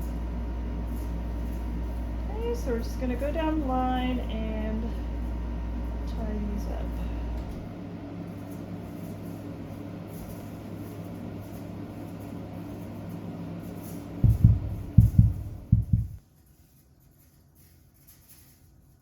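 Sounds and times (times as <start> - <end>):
steady low hum: 0.0 - 17.3
dull low thumps: 14.2 - 16.2.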